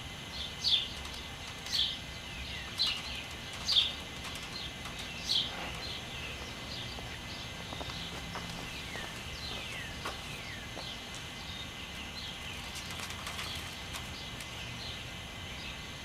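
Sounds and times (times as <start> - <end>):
bird chirping: 0.2 - 16.0.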